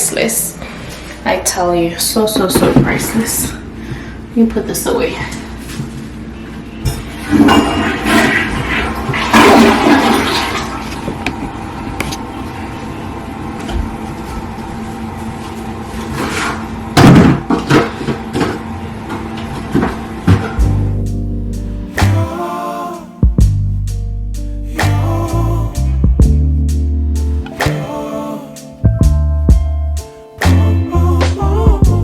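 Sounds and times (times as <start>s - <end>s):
household hum: 0.0s - 23.9s.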